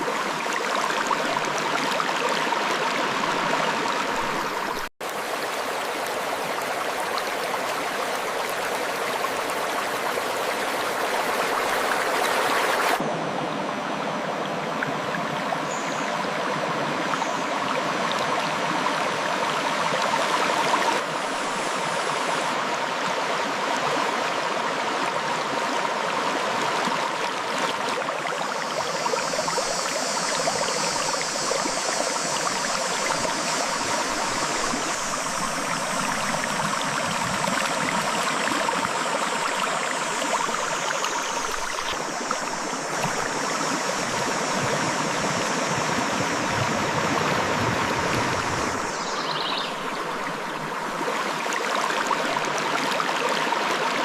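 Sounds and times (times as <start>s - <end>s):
water flowing over rocks: 0.0s - 13.1s, 14.2s - 54.0s.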